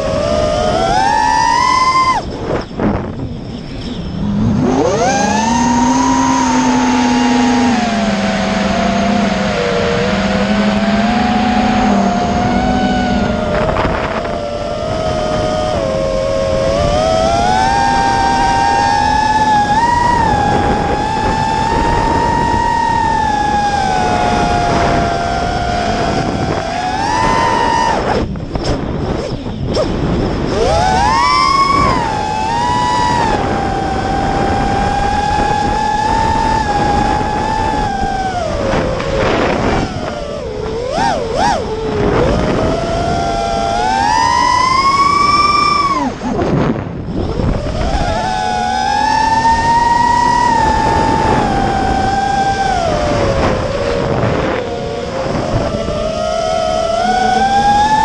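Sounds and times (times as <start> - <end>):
drone motors and propellers whining: 0.0 - 58.0.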